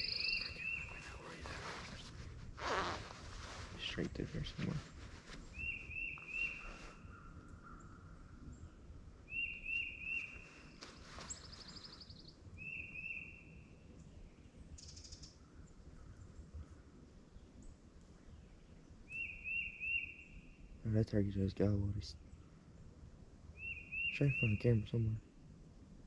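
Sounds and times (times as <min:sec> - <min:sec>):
songbird whistled phrase: 0:00.0 - 0:01.3, 0:23.6 - 0:24.8
higher bird trill: 0:00.0 - 0:01.5, 0:05.6 - 0:07.4
faint outdoor background noise: 0:00.0 - 0:26.0.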